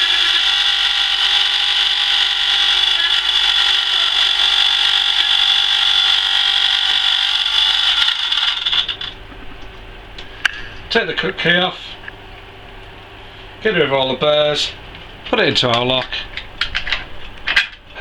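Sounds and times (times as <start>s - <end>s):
key-cutting machine cutting: 0.0s - 9.1s.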